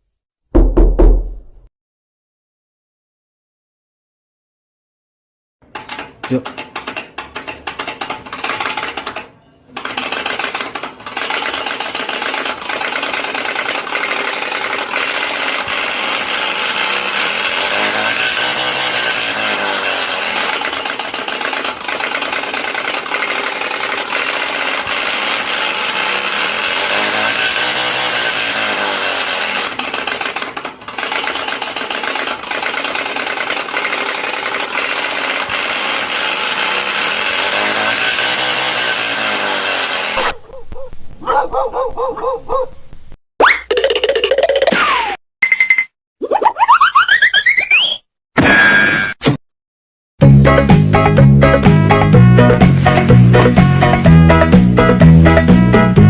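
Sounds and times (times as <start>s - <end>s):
motor running: 9.8s - 40.4s.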